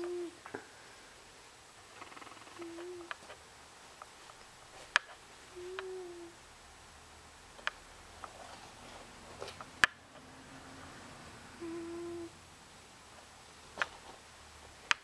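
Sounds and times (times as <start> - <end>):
cat snoring tone: 5.6 - 6.3, 11.5 - 12.3
cat breathing: 11.4 - 12.3.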